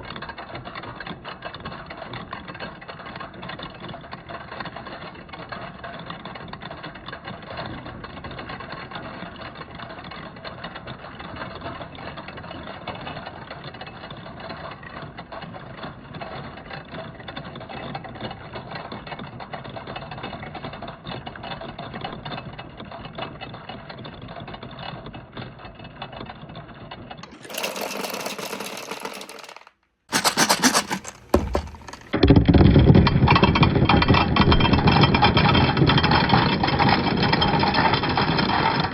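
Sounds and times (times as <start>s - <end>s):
marbles clattering down wooden track: 27.2s - 32.6s.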